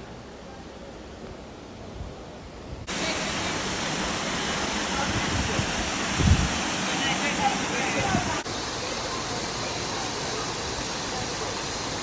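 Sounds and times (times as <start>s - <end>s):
waterfall rushing: 2.9s - 12.0s.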